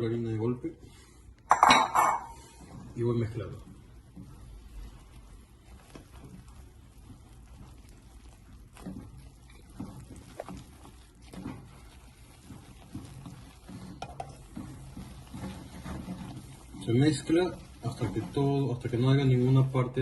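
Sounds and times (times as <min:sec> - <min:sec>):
utensil stirring thick dough: 0:00.0 - 0:20.0.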